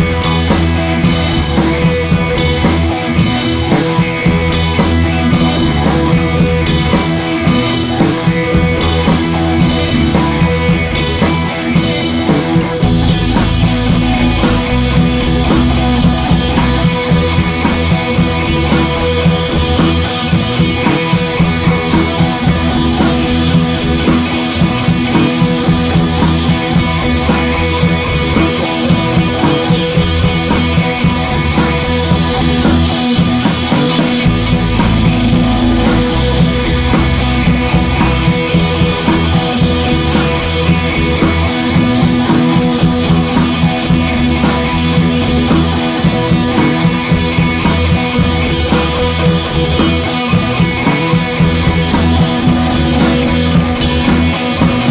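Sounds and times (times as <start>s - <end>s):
rock music with drums and guitar: 0.0s - 54.9s.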